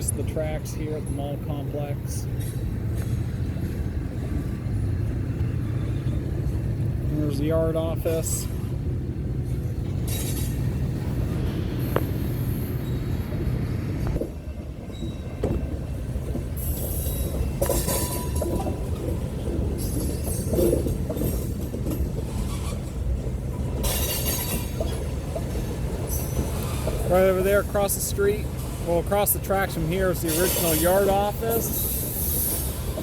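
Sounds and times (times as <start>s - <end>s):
wheels rumbling on rail: 0.0s - 33.0s
high wheel squeal: 11.9s - 13.4s, 14.9s - 15.5s, 16.6s - 18.6s, 19.7s - 21.5s, 22.3s - 23.0s, 23.8s - 27.9s, 29.9s - 33.0s.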